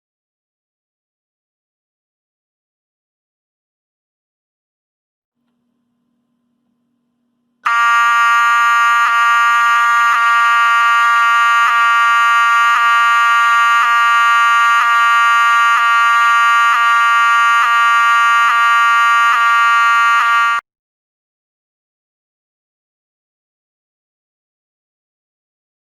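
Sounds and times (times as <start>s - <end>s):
fire alarm horn blaring: 7.6s - 20.6s.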